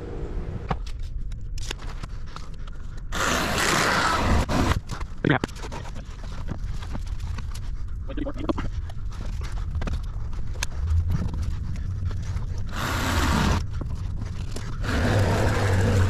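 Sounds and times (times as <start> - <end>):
low steady rumble: 6.4 - 16.0.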